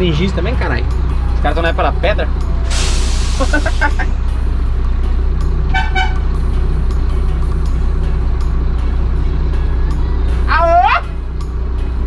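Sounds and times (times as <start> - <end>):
truck engine idling: 0.0 - 10.4
truck horn toot: 5.7 - 6.4.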